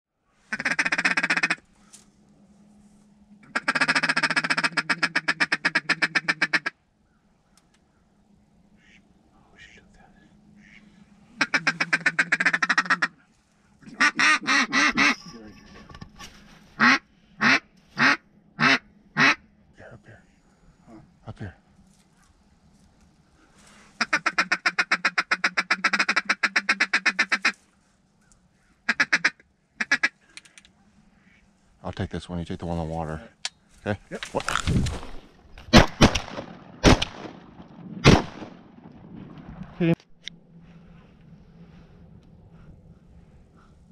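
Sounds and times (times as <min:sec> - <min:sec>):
duck call quacking: 0:00.5 - 0:01.6, 0:03.4 - 0:06.8, 0:10.6 - 0:13.2, 0:13.9 - 0:15.2, 0:16.8 - 0:19.4, 0:24.0 - 0:27.6, 0:28.9 - 0:30.2.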